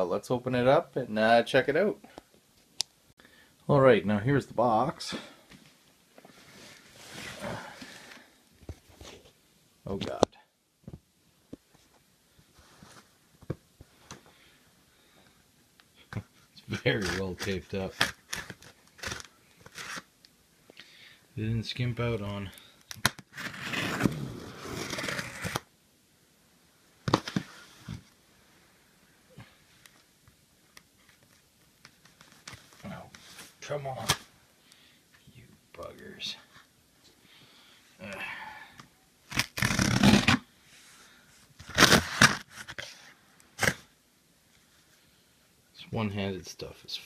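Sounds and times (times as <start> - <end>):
packing tape ripped off box: 16.9 - 20.1, 22.9 - 25.7, 39.3 - 40.5, 41.6 - 43.9.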